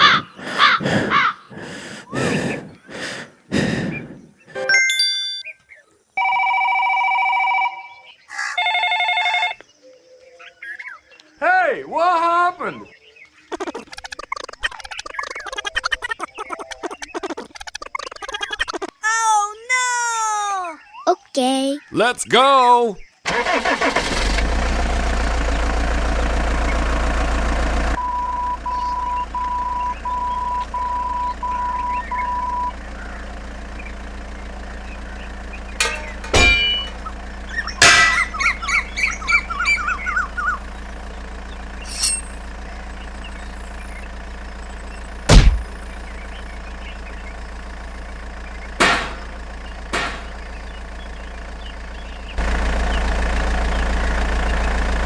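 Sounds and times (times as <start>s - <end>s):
mini tractor engine drone: 0.0s - 4.7s, 23.3s - 55.0s
reversing beeps: 28.0s - 32.8s
knocks and clattering: 35.8s - 37.2s, 37.8s - 38.4s, 48.8s - 50.4s.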